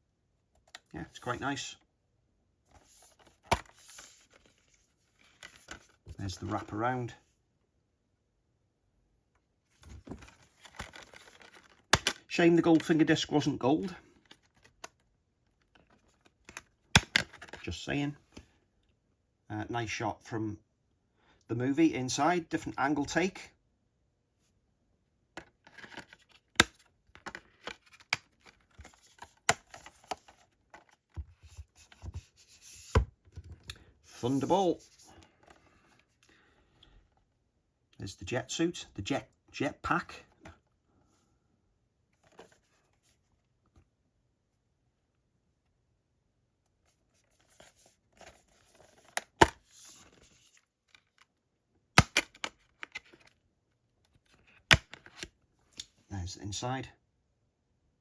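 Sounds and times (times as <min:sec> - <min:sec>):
disc case rustling and scraping: 0:02.7 - 0:06.1, 0:09.8 - 0:13.0, 0:25.4 - 0:36.2, 0:42.2 - 0:43.2, 0:47.1 - 0:51.3, 0:52.0 - 0:53.4
disc case clicks and snaps: 0:03.4 - 0:03.8, 0:10.2 - 0:12.3, 0:16.5 - 0:17.6, 0:25.4 - 0:30.9, 0:48.2 - 0:49.6, 0:52.0 - 0:53.3, 0:54.7 - 0:55.9.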